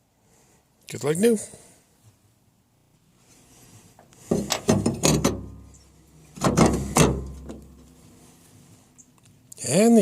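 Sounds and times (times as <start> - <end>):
heavy metal parts knocking and rattling: 4.3 - 5.6, 6.3 - 7.8.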